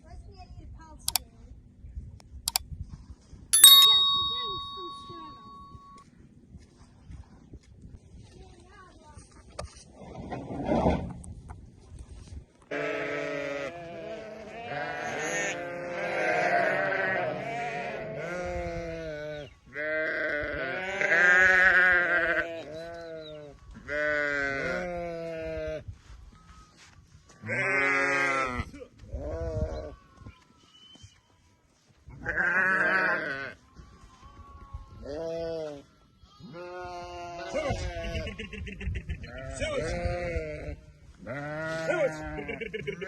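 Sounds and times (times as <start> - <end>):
sheep bleating: 12.7 - 18.4, 32.2 - 33.6.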